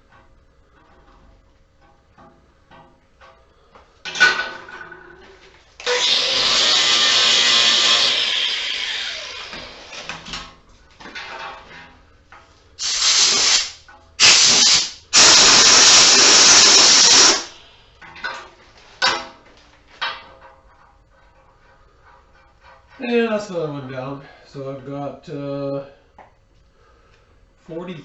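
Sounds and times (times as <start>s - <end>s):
spraying hiss bursts: 12.8s - 17.6s.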